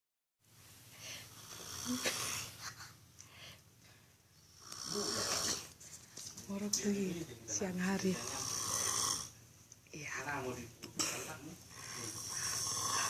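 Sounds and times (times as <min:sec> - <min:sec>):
person snoring wheezily: 0:01.4 - 0:02.5, 0:04.6 - 0:05.7, 0:11.8 - 0:13.0.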